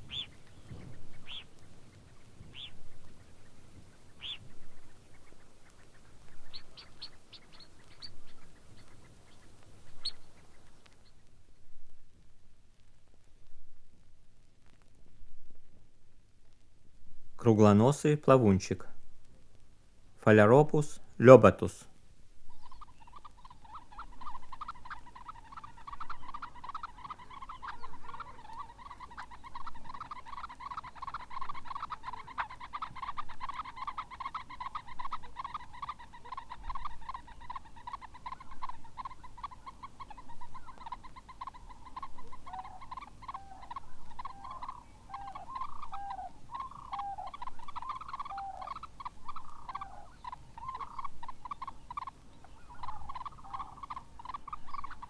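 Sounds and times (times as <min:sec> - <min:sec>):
birds twittering: 0:00.0 - 0:11.3, 0:22.4 - 0:55.0.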